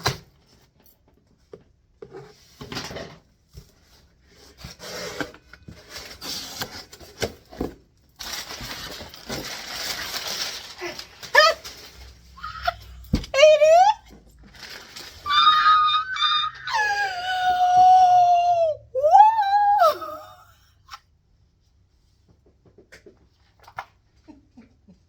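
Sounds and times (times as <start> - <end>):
cardboard and paper rustling: 3.6 - 15.6.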